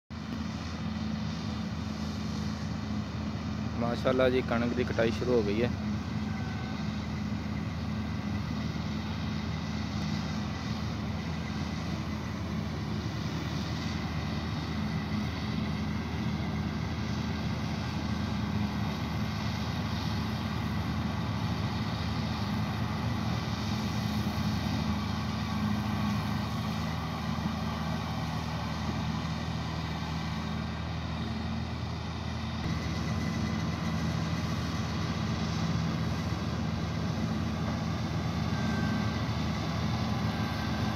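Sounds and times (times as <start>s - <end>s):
clatter of harvester workings: 0.1s - 40.9s
combine harvester engine drone: 0.1s - 40.9s.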